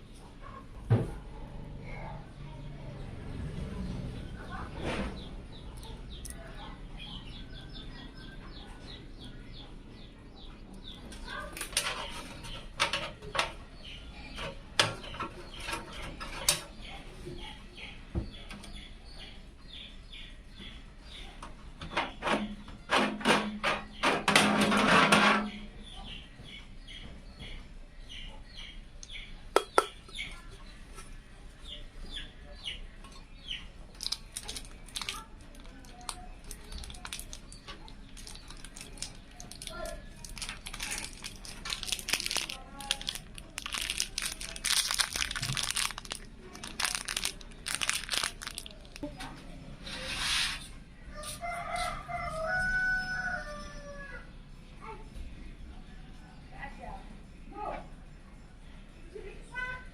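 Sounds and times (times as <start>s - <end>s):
chickens clucking: 0.0s - 2.3s, 3.6s - 54.1s
rooster crowing: 51.1s - 54.3s.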